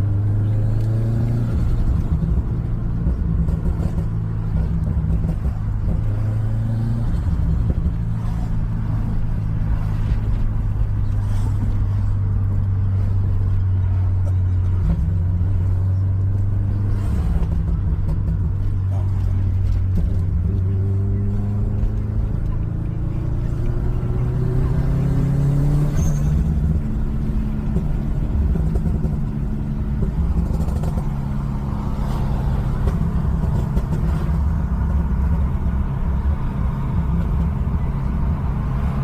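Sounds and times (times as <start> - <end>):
car engine droning: 0.0 - 39.0.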